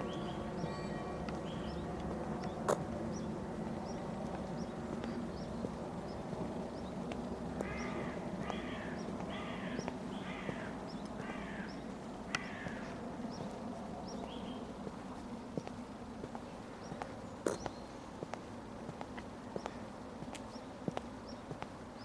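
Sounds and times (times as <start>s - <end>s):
church bell low hum: 0.0s - 5.3s
sharp bell strikes: 0.6s - 1.3s.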